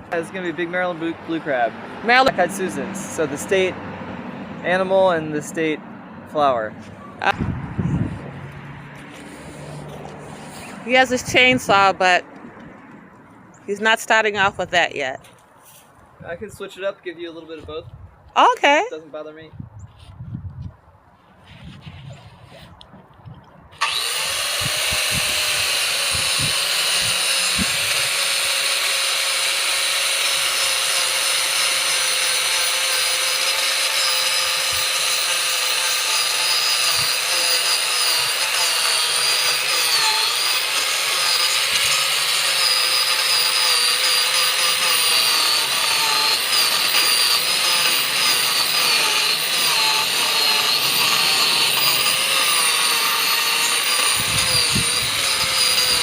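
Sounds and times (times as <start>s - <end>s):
power carving tool cutting wood: 0.0s - 3.7s, 9.0s - 12.2s, 23.8s - 56.0s.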